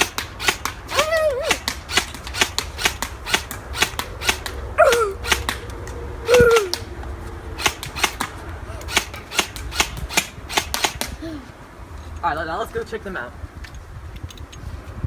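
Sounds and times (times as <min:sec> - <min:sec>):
airsoft gun single shots: 0:00.0 - 0:05.6, 0:07.6 - 0:11.2.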